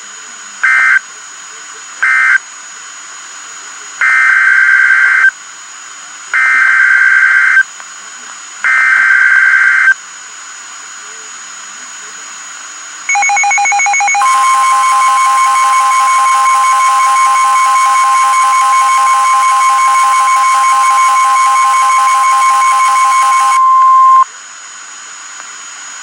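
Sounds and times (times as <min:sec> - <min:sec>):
rapid pulsing beeps: 0:13.1 - 0:24.2
steady single-pitch alert tone: 0:13.1 - 0:24.2.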